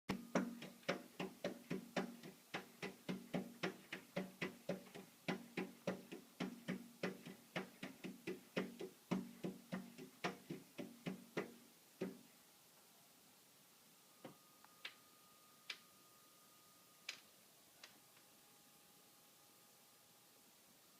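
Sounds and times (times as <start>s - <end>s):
knocking on hollow object: 0.1s - 12.2s.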